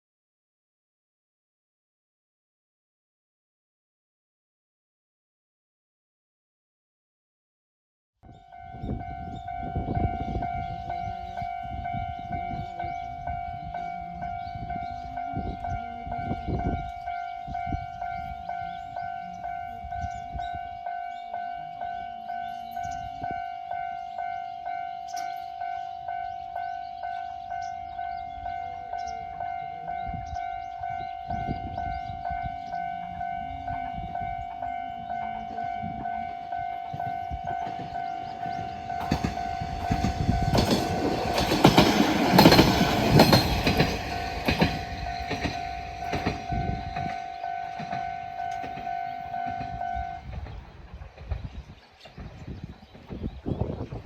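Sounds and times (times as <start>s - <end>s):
level crossing warning bell: 8.3s - 50.6s.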